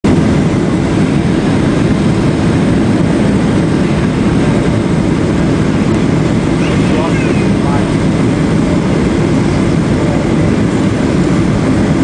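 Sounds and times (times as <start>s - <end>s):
airplane cabin roar: 0.0s - 12.0s.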